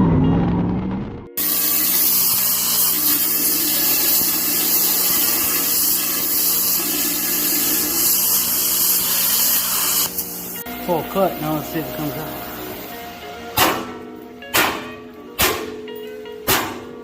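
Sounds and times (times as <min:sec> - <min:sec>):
power tool cutting metal: 0:01.4 - 0:12.9.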